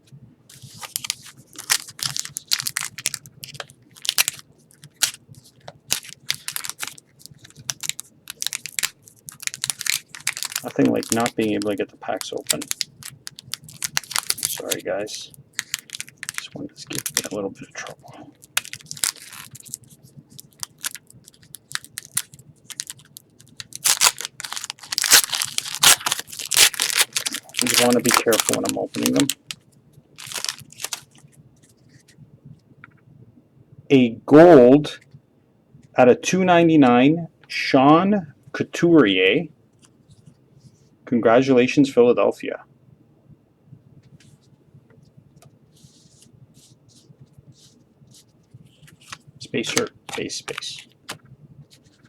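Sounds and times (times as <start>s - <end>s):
plastic wrapper crinkling and tearing: 0.5s - 29.6s, 30.2s - 31.2s, 48.7s - 51.2s.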